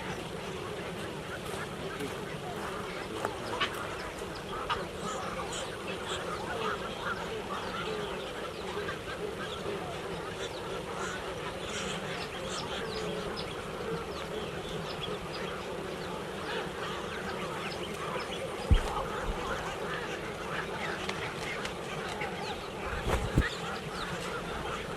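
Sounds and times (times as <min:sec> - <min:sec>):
flock of birds chirping: 0:00.0 - 0:24.9
low thump: 0:23.0 - 0:23.5.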